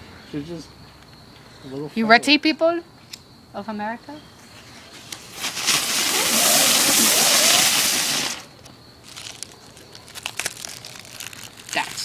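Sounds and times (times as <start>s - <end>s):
firework hissing: 5.0s - 9.3s
firework crackles: 5.0s - 12.0s.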